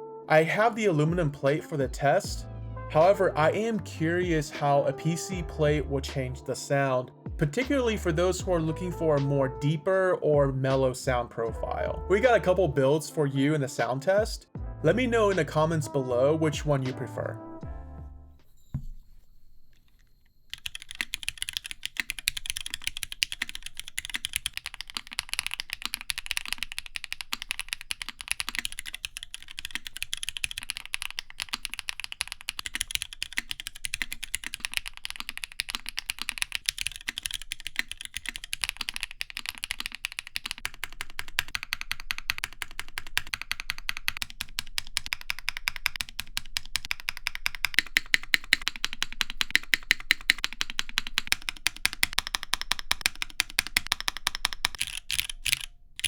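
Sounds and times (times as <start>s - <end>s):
mechanical keyboard keystroke clacks: 20.5s - 55.8s.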